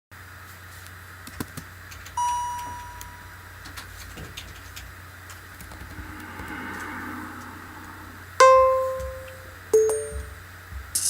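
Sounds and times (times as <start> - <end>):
low hum and hiss: 0.2 - 11.0
faint scattered clicks: 1.2 - 5.7
clear high tone: 2.2 - 3.5, 6.7 - 10.4.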